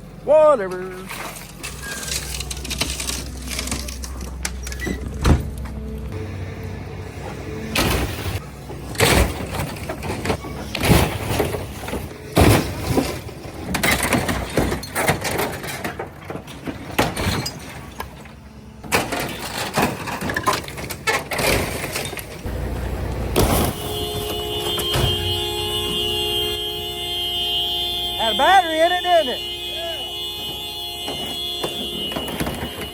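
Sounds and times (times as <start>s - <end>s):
excavator engine running: 0.0s - 32.9s
crunching metal bangs: 1.0s - 32.9s
glass breaking: 1.1s - 4.8s
car horn blaring: 22.5s - 32.9s.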